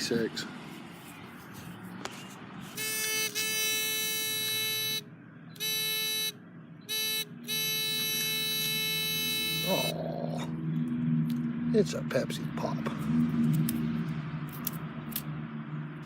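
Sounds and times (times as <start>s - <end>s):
metal detector buzzy tone: 2.7s - 5.0s, 5.6s - 9.9s.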